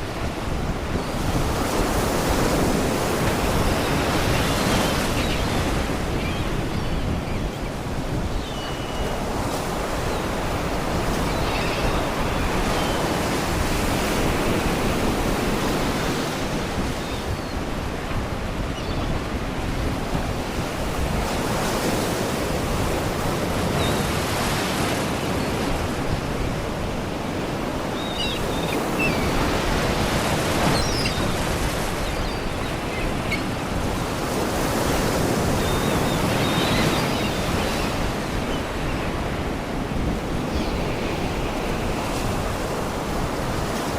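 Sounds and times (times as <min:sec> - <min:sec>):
sea waves washing against rocks: 0:21.4 - 0:43.9
seagulls crying: 0:23.7 - 0:43.4.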